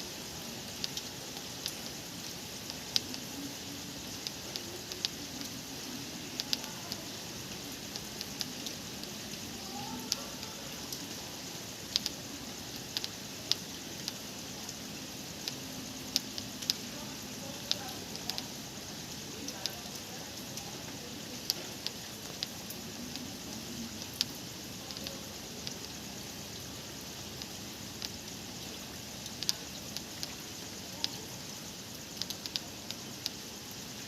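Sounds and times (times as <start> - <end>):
raindrops ticking on surfaces: 0.0 - 34.0
steady rain hiss: 0.0 - 34.0.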